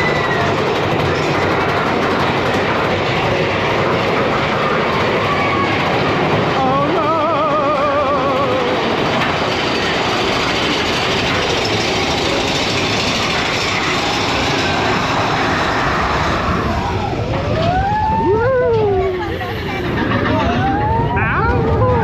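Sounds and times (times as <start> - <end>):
roller coaster wind and rattling track: 0.0 - 22.0
riders whooping: 14.8 - 22.0.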